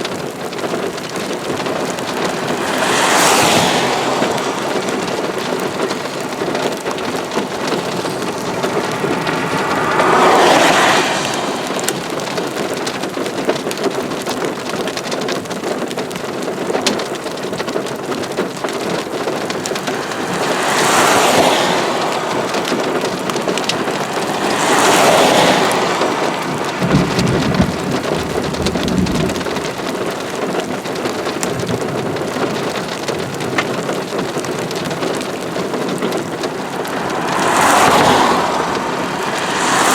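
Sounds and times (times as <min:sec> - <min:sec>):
heavy rain: 0:00.0 - 0:39.9
low thunder rumble: 0:01.5 - 0:12.7, 0:18.8 - 0:30.2.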